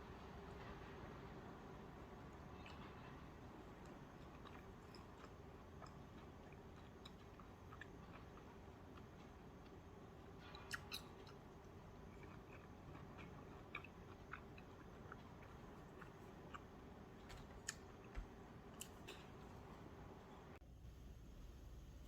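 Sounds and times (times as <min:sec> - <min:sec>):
person chewing: 0:02.4 - 0:19.6.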